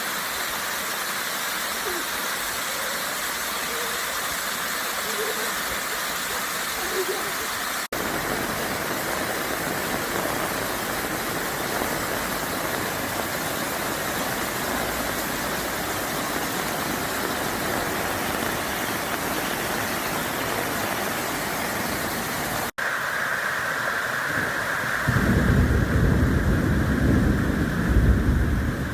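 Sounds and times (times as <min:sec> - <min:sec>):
rushing water: 0:00.0 - 0:28.9.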